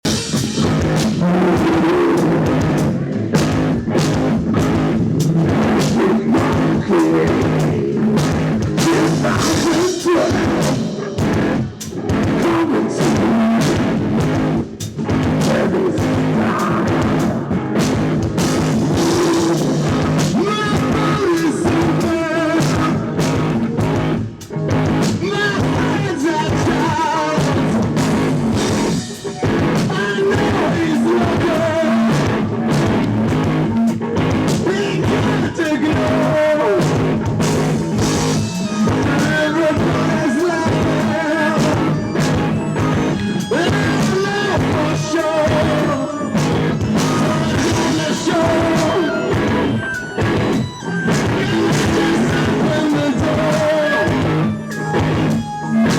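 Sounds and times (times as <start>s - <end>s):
rock band playing live: 0.0s - 55.9s
wavering high melodic line: 37.9s - 55.9s.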